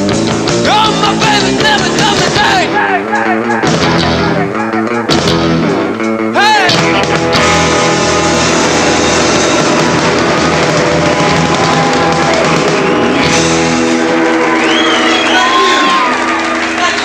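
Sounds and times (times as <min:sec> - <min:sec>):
bass guitar: 0:00.0 - 0:17.0
drums: 0:00.0 - 0:17.0
electric guitar: 0:00.0 - 0:17.0.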